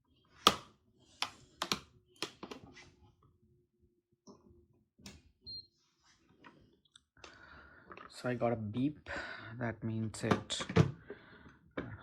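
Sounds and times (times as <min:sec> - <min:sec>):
plastic clicks and knocks: 0:01.2 - 0:02.6.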